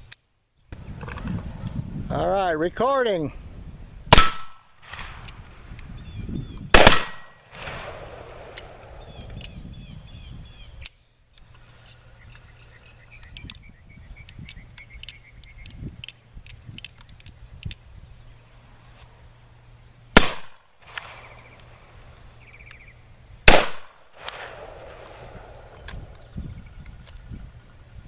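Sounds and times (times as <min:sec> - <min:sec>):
pistol shots with echo: 0:04.1 - 0:05.2, 0:06.7 - 0:09.0, 0:20.2 - 0:21.4, 0:23.5 - 0:25.1.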